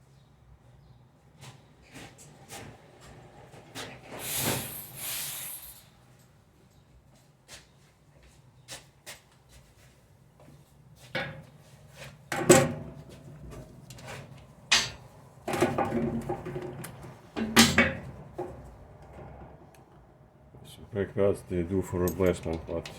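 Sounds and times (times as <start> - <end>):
metal rattling: 14.7 - 15.1
metal tools clanking on brake parts: 14.7 - 15.8, 17.4 - 18.1, 22.0 - 22.9.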